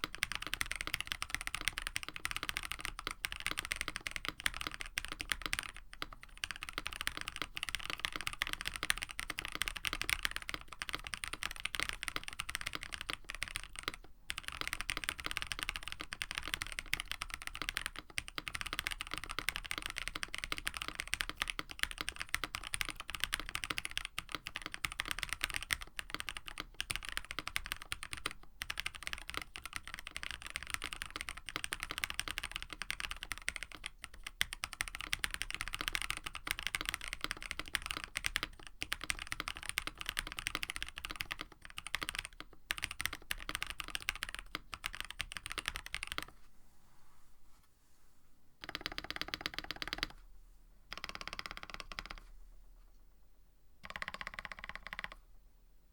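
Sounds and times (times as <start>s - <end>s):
fast mechanical keyboard typing: 0.0s - 46.3s, 48.6s - 50.2s, 50.9s - 52.2s, 53.8s - 55.2s.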